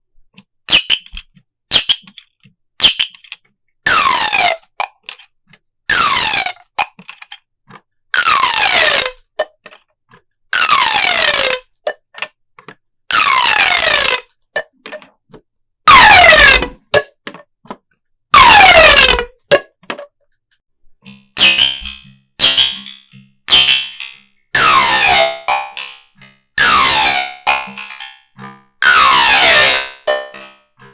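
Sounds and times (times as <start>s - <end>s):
sharp clicks and pops: 0.4s - 20.2s, 21.0s - 30.9s
plastic pop tube stretching: 0.7s - 20.2s, 21.4s - 22.9s, 28.8s - 30.5s.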